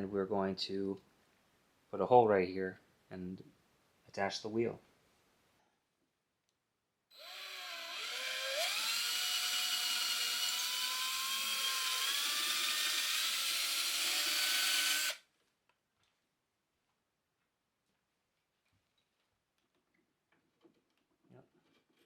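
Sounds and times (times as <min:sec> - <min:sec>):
cordless drill whining: 0:07.2 - 0:15.2.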